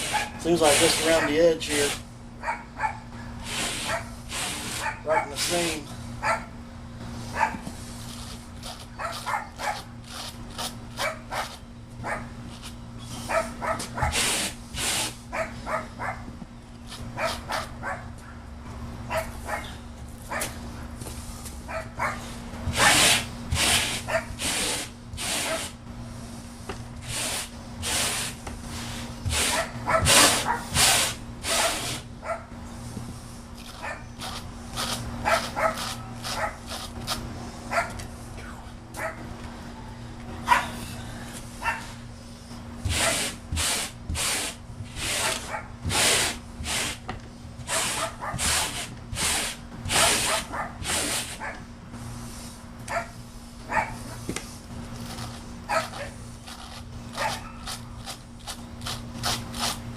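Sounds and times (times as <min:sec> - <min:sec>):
steady low hum: 0:00.0 - 0:59.9
dog barking: 0:02.4 - 0:03.0, 0:06.2 - 0:06.5, 0:07.4 - 0:07.6, 0:09.0 - 0:09.8, 0:13.3 - 0:14.2, 0:15.3 - 0:16.2, 0:21.7 - 0:22.2, 0:29.5 - 0:30.7, 0:31.5 - 0:32.5, 0:35.2 - 0:35.8, 0:37.7 - 0:38.0, 0:39.0 - 0:39.2, 0:40.5 - 0:40.8, 0:41.6 - 0:41.9, 0:50.3 - 0:50.8, 0:52.9 - 0:54.0, 0:55.7 - 0:56.2.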